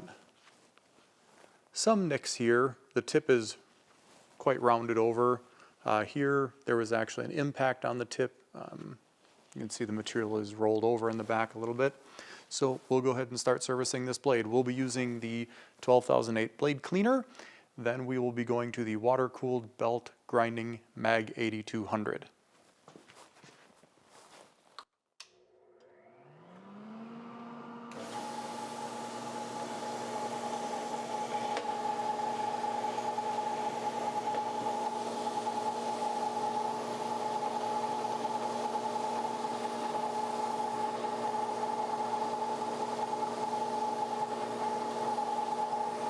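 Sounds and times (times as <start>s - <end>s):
electric motor humming and whining: 25.3s - 46.0s.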